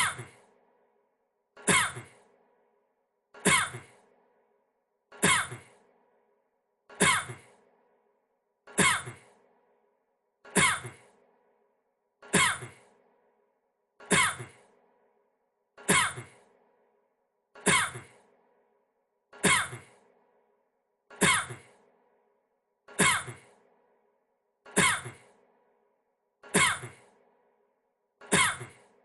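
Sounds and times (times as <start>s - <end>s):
man coughing: 1.6s - 2.2s, 5.2s - 5.7s, 7.0s - 7.5s, 10.5s - 11.1s, 15.8s - 16.4s, 17.7s - 18.1s, 19.4s - 20.0s, 24.7s - 25.3s, 28.2s - 28.8s.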